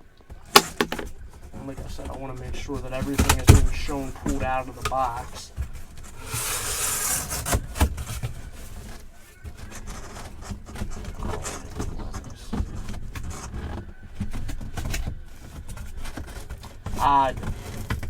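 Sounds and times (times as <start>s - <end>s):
rustling and scraping of unpacking: 0.4s - 18.0s
loud knock: 0.6s - 1.1s.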